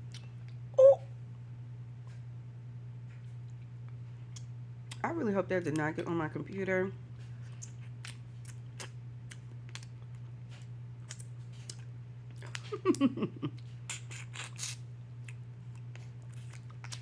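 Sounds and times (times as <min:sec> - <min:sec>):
steady low hum: 0:00.0 - 0:17.0
shells cracking while eating: 0:07.6 - 0:10.3, 0:11.0 - 0:13.0, 0:13.9 - 0:17.0.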